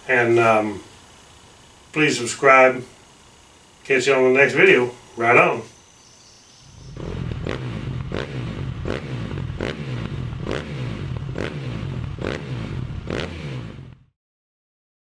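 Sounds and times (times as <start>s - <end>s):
mechanical engine-like running: 0.0s - 14.1s
sharp regular beat: 6.6s - 14.0s.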